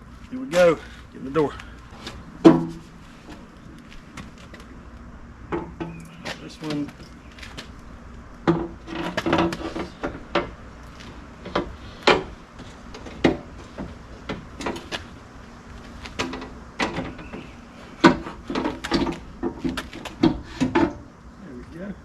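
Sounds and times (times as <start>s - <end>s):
metal door knocks and clanks: 2.4s - 2.9s.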